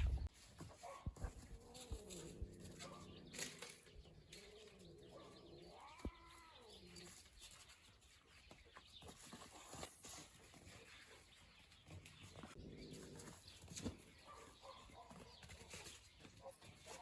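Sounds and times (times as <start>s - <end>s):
faint animal cries: 5.6s - 7.1s.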